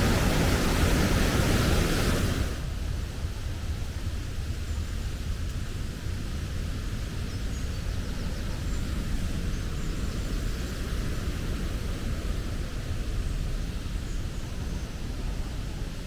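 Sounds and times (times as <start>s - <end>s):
rushing water: 0.0s - 2.7s.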